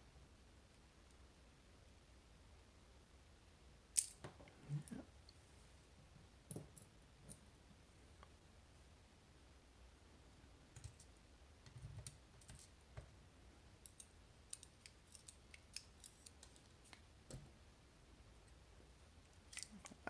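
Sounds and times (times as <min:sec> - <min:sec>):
small metal parts clicking: 0:04.0 - 0:04.2, 0:13.8 - 0:17.0, 0:19.5 - 0:19.8.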